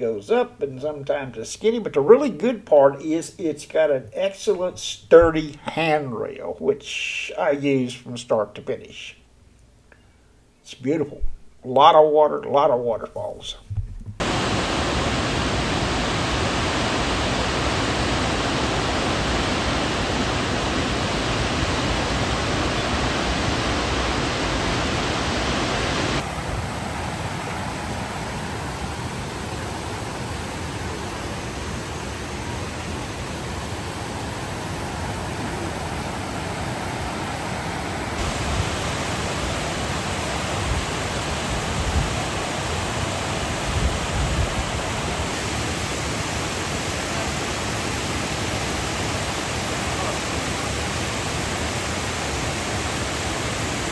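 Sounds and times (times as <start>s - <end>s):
waterfall rushing: 14.2s - 53.9s.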